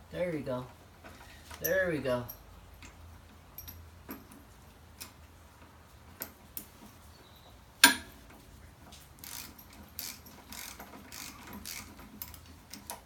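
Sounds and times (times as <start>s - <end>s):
metal tool clicks and taps: 7.8s - 8.1s
sharp metal clack: 7.8s - 8.2s.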